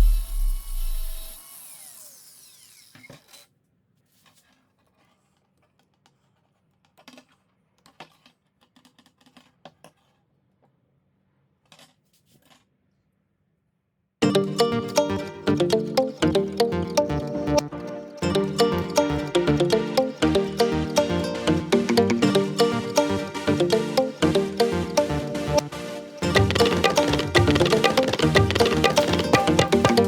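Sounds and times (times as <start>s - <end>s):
power tool motor spinning down: 0.0s - 2.9s.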